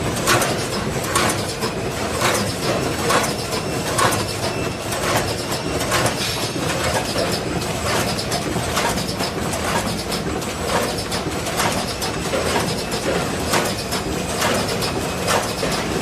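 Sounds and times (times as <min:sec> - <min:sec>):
machine clicks and knocks: 0:00.0 - 0:16.0
packing machine clattering: 0:00.0 - 0:16.0.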